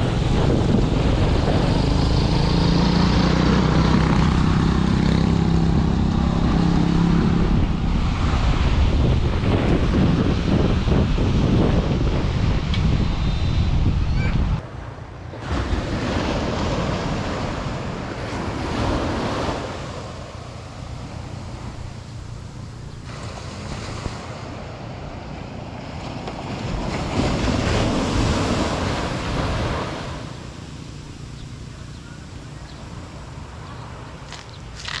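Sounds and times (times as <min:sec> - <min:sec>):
wind rumbling on microphone: 0:00.0 - 0:35.0
surf breaking on a beach: 0:15.3 - 0:22.2, 0:23.0 - 0:31.2.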